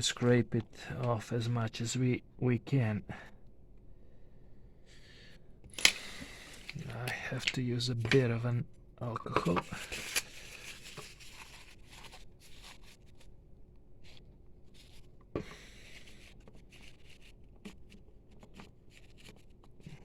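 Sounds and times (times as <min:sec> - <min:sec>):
faint scratching and rubbing: 0:14.0 - 0:20.0.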